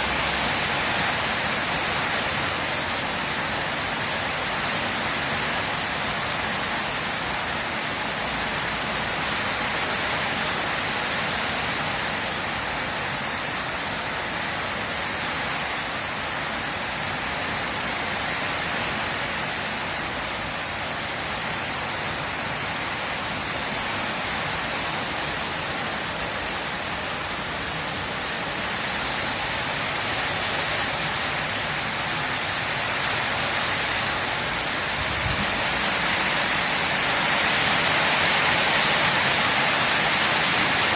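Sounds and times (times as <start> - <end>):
heavy rain downpour: 0.0 - 40.9.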